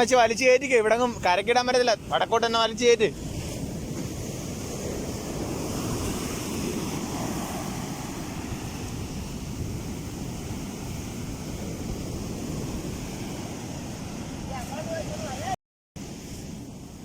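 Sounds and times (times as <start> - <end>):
surf roaring onto beach: 0.0 - 17.0
wind buffeting microphone: 0.0 - 17.0.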